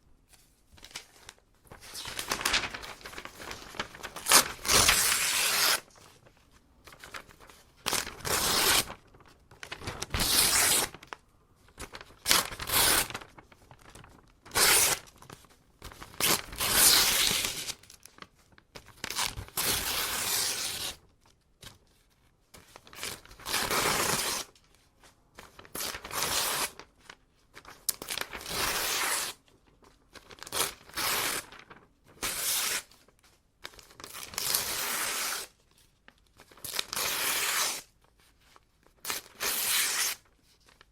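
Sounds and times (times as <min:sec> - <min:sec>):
paper being ripped by hand: 0:01.9 - 0:05.9, 0:07.9 - 0:09.0, 0:09.9 - 0:11.0, 0:12.3 - 0:13.2, 0:14.5 - 0:15.0, 0:16.2 - 0:17.7, 0:19.1 - 0:21.0, 0:23.4 - 0:24.5, 0:25.8 - 0:26.8, 0:28.2 - 0:29.4, 0:30.4 - 0:32.9, 0:34.3 - 0:35.5, 0:36.7 - 0:37.9, 0:39.1 - 0:40.3.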